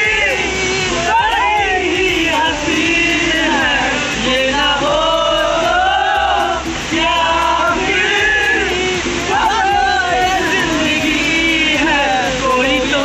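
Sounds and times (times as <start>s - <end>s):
men singing together: 0.0s - 13.0s.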